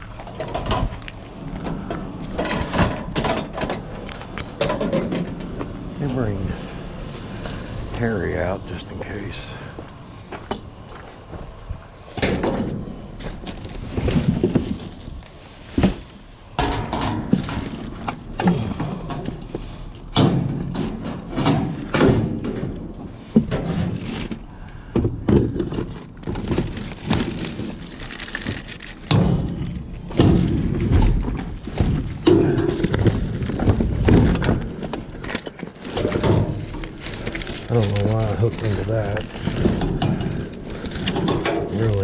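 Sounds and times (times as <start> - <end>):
debris thudding and clattering in dumpster: 12.1 - 19.3, 25.0 - 42.0.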